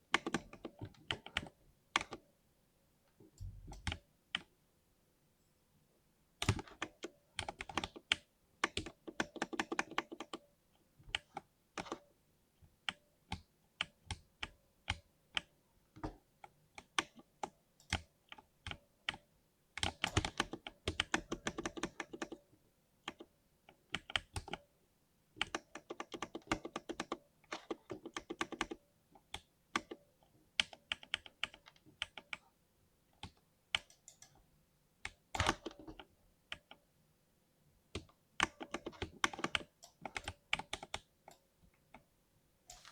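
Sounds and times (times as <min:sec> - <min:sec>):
typing on mechanical keyboard: 0:00.1 - 0:02.2, 0:06.4 - 0:10.4, 0:19.8 - 0:22.4, 0:23.9 - 0:24.6, 0:25.4 - 0:30.0, 0:30.6 - 0:32.4, 0:35.0 - 0:36.8, 0:38.0 - 0:42.0.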